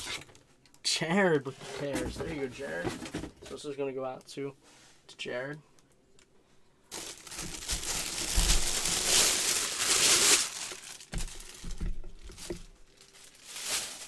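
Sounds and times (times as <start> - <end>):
plastic packaging crinkling: 6.9 - 14.0.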